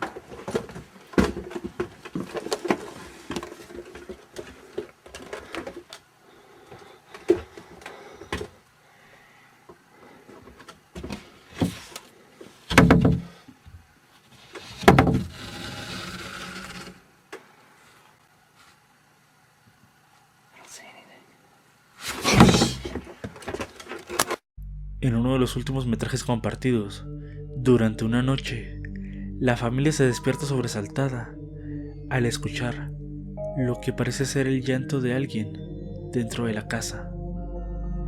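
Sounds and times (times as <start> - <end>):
indoor knocks and bumps: 12.7 - 13.4, 14.8 - 15.3, 22.3 - 23.6
heavy thumps: 22.2 - 23.2.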